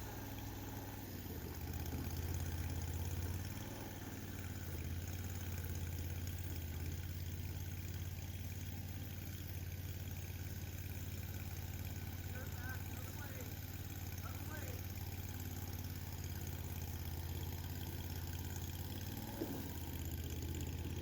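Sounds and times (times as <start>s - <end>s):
skid steer engine running: 0.0s - 21.0s.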